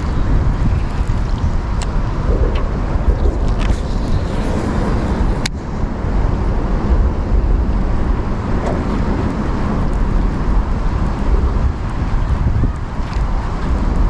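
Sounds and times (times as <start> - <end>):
strong wind buffeting microphone: 0.0 - 14.0.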